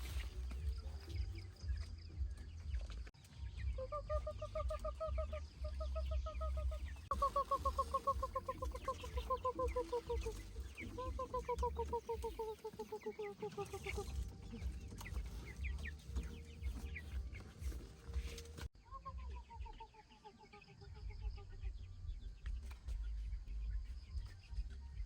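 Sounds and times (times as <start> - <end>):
chickens calling: 0.0 - 25.0
steady low rumble: 21.0 - 25.0.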